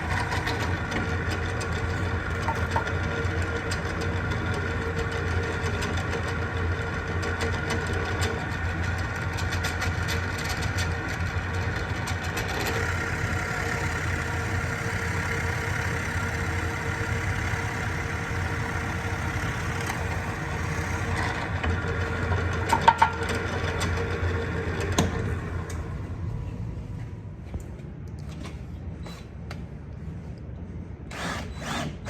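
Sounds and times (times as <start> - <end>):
power drill boring wood: 0.0 - 0.9, 12.4 - 21.5, 31.1 - 32.0.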